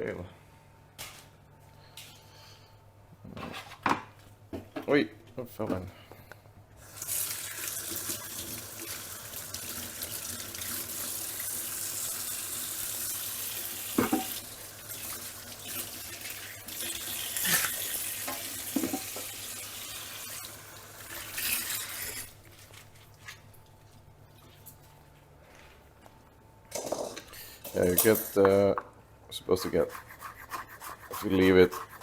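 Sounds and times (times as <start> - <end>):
tap running into sink: 13.9 - 14.4.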